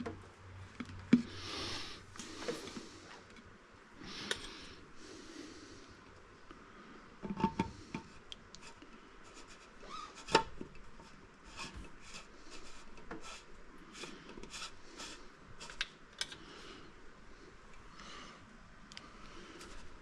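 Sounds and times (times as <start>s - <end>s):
plumbing parts rubbing and scraping: 7.2s - 15.8s.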